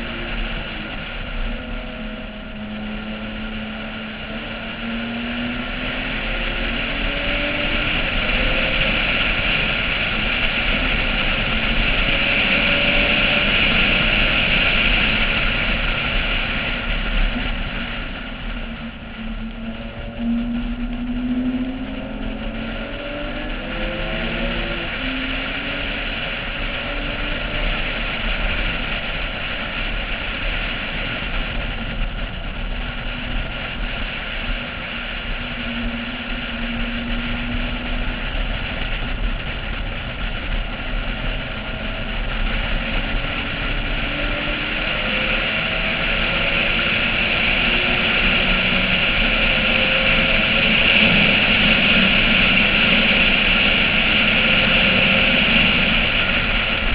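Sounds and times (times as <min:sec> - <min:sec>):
car engine shifting gears: 0:00.0 - 0:56.9
heavy wind rush: 0:00.0 - 0:56.9.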